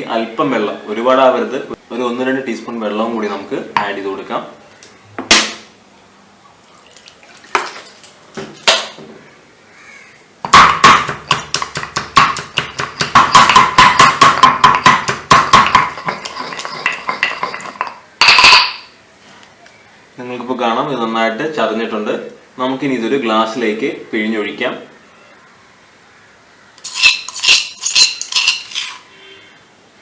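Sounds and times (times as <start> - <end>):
pestle pounding in a mortar: 10.4 - 18.8.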